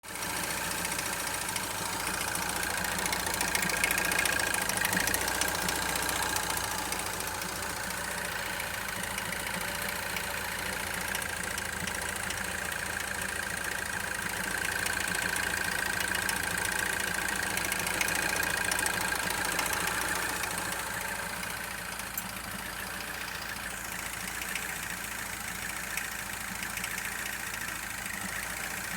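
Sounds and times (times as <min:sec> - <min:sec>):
engine idling with whine: 0:00.0 - 0:28.9.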